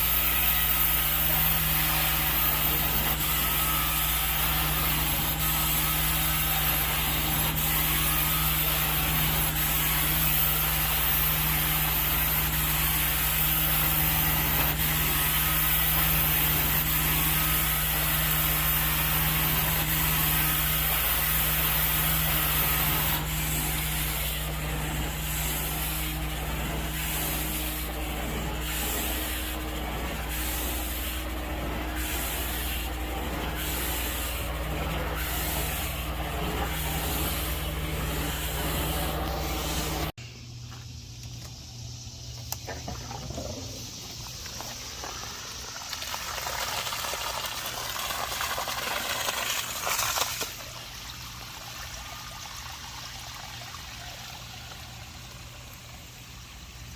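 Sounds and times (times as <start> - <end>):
suction hiss of cleaning wand: 0.0 - 40.2
low machine hum: 0.0 - 56.9.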